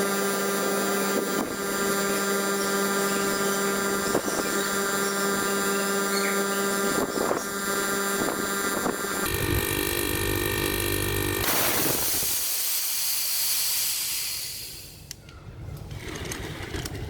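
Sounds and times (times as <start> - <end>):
refrigerator compressor humming: 0.0 - 12.3.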